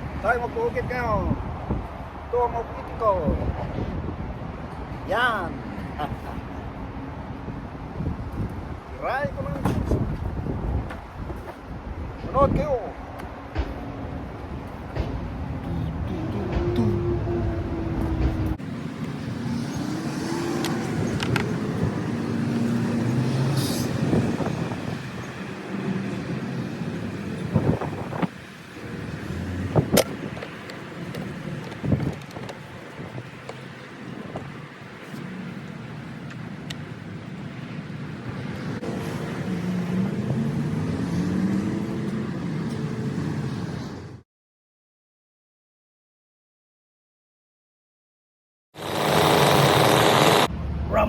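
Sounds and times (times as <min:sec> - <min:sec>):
chainsaw carving wood: 0:48.8 - 0:50.5.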